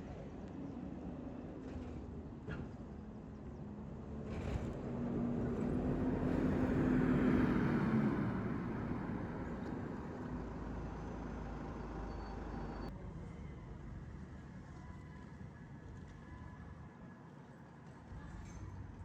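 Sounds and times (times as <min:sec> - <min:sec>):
train rumbling on track: 0:03.7 - 0:12.9.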